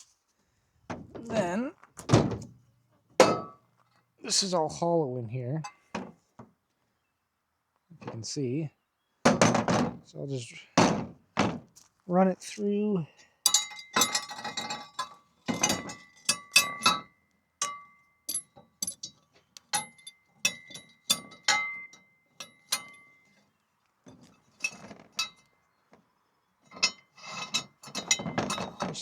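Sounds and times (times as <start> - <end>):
steel parts clinking: 13.5 - 23.3, 24.3 - 25.5, 26.7 - 29.0.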